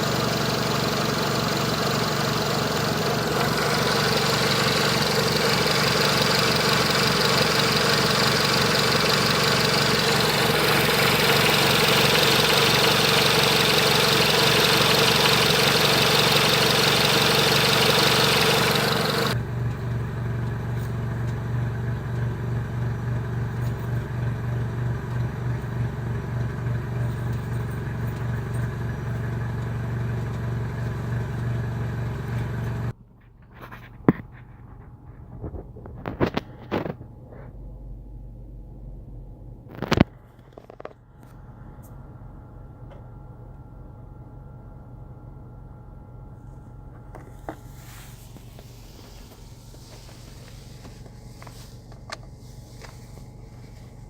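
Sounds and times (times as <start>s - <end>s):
car engine running: 0.0s - 32.9s, 47.0s - 54.0s.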